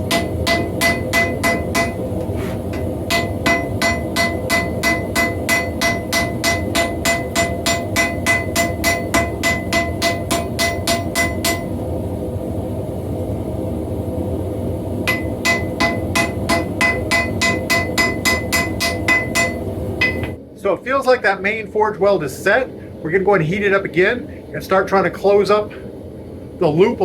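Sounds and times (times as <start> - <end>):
hammer ringing on anvil: 0.0 - 2.1, 2.7 - 11.8, 15.1 - 20.4
gas forge rushing: 0.0 - 20.4.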